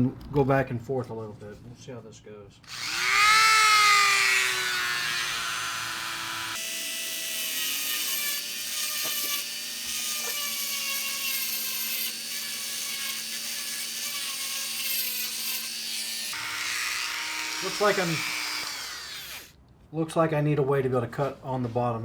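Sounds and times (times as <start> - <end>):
rotary tool grinding brick: 2.7 - 19.5.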